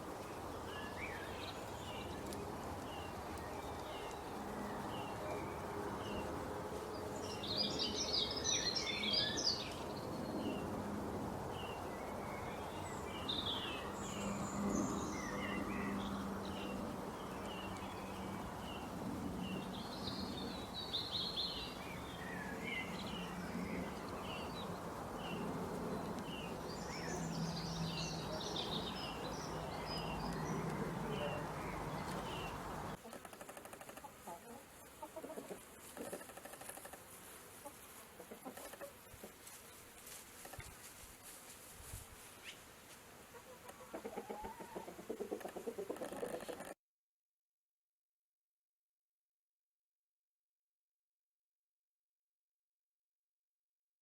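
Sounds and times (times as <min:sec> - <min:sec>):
background hiss: 0:00.0 - 0:46.8
birds chirping and singing: 0:11.6 - 0:33.4.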